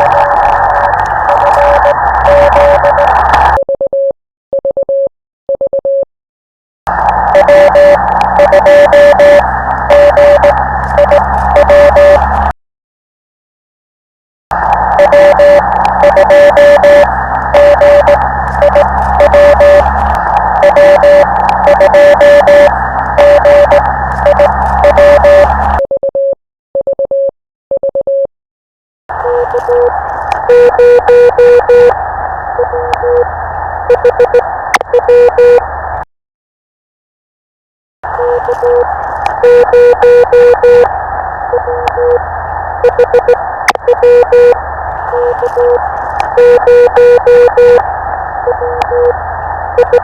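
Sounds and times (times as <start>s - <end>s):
radio static hiss: 0.0s - 3.6s, 6.9s - 12.5s, 14.5s - 25.8s, 29.1s - 36.0s, 38.1s - 50.0s
morse code tone: 0.0s - 6.1s, 6.9s - 12.5s, 14.8s - 28.3s, 29.1s - 32.0s, 32.6s - 33.3s, 33.9s - 35.6s, 38.1s - 40.9s, 41.5s - 42.2s, 42.8s - 47.8s, 48.4s - 49.2s, 49.8s - 50.0s.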